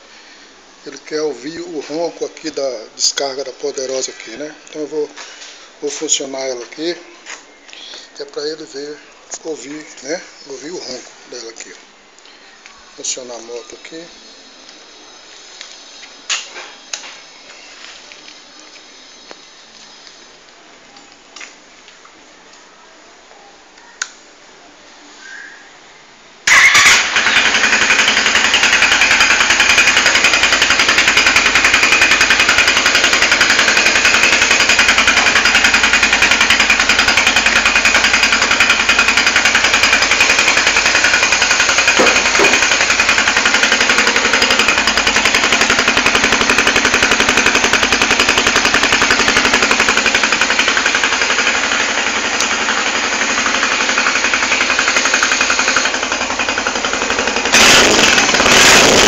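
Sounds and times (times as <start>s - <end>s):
motorcycle engine idling: 26.5s - 59.0s.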